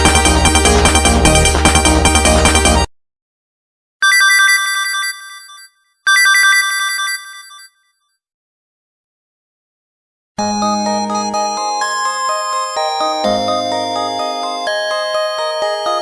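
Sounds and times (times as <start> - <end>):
chiming phone ringtone: 4.0 - 7.9, 10.4 - 16.0.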